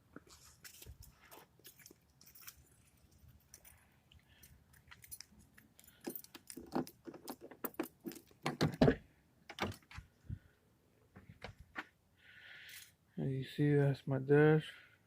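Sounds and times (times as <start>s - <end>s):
objects clicking and knocking: 4.4s - 10.0s.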